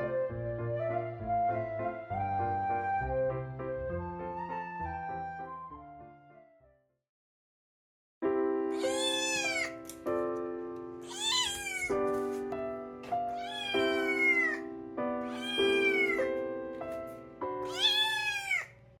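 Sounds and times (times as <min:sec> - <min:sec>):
background music of held chords: 0:00.0 - 0:06.5, 0:08.3 - 0:18.1
cat meowing: 0:08.7 - 0:10.0, 0:11.0 - 0:12.0, 0:13.3 - 0:16.4, 0:17.6 - 0:18.8.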